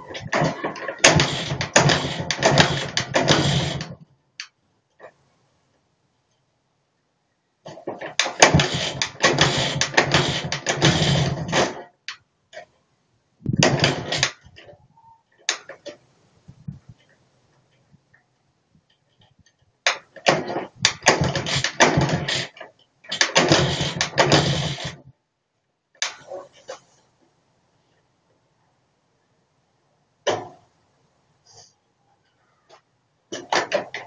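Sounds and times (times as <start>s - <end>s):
two-stroke engine firing: 0.0s - 4.0s, 8.1s - 11.9s, 13.6s - 14.5s, 19.9s - 25.1s.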